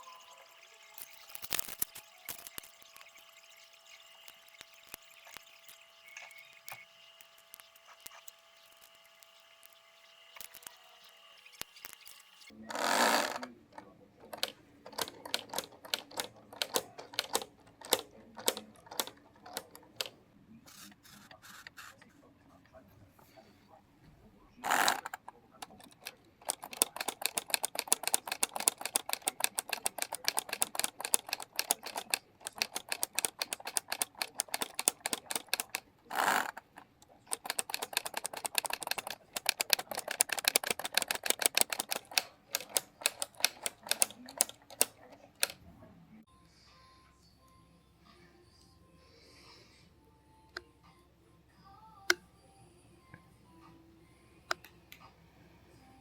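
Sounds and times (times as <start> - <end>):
plastic keys clacking: 1.0 - 3.2, 14.2 - 20.1, 24.8 - 45.6.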